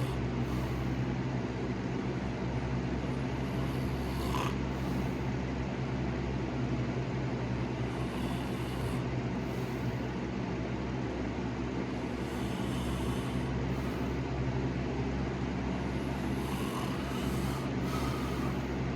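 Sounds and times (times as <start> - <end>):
slow snoring breaths: 0.0 - 1.1, 3.2 - 5.3, 7.8 - 10.2, 11.8 - 14.3, 15.7 - 18.9
steady low hum: 0.0 - 18.9.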